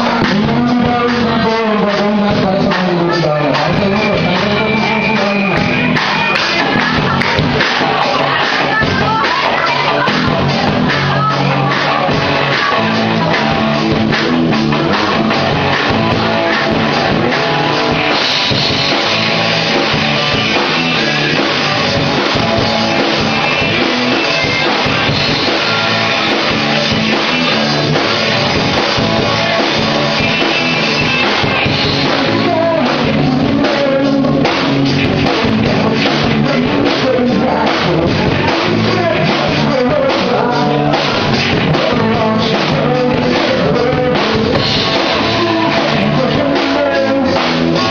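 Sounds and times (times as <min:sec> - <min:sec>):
drum kit: 0:00.0 - 0:47.9
guitar: 0:00.0 - 0:47.9
person singing: 0:00.0 - 0:47.9
rock band playing live: 0:00.0 - 0:47.9.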